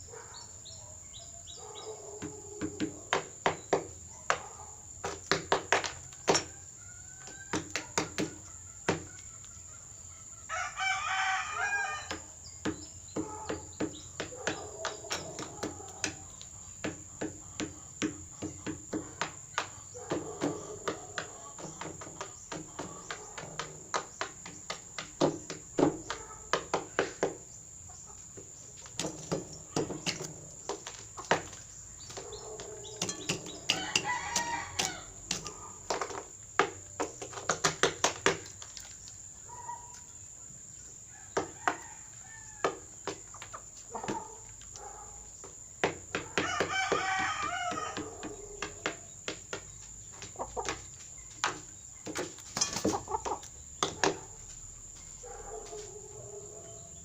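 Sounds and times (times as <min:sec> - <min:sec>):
rooster call: 0:10.4 - 0:12.3, 0:32.5 - 0:35.8, 0:46.3 - 0:48.8
rooster clucking: 0:43.9 - 0:44.4.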